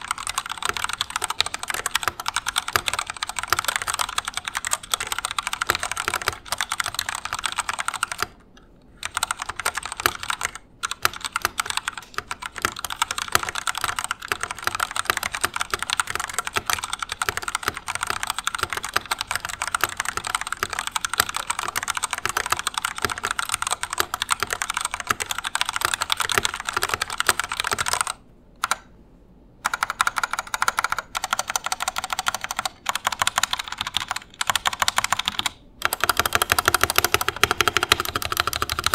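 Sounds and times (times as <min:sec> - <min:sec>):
fast mechanical keyboard typing: 0:00.0 - 0:08.4, 0:09.0 - 0:28.9, 0:29.6 - 0:38.9.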